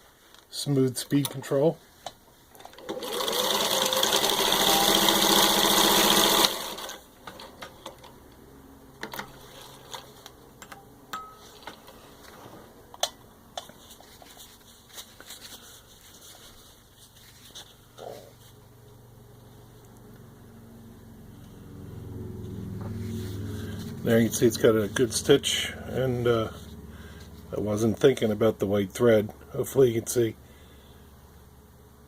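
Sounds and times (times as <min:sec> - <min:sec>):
sewing machine running fast: 0:02.8 - 0:07.0.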